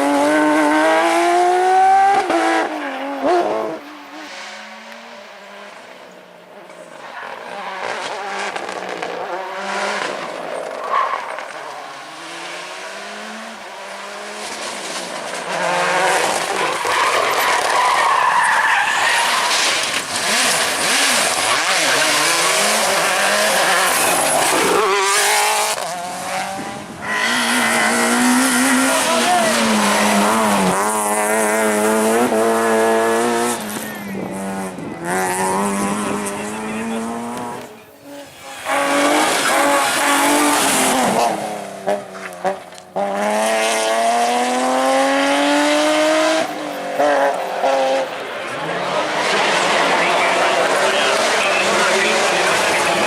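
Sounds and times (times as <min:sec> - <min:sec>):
rally car engines revving: 0:00.0 - 0:53.0
tyres squealing and skidding: 0:15.6 - 0:42.4.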